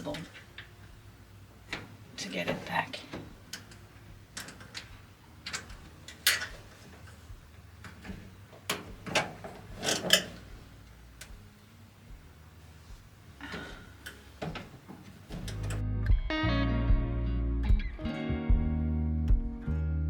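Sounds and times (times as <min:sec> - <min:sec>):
hard parts clicking and scraping: 0:01.6 - 0:11.4, 0:13.4 - 0:15.8.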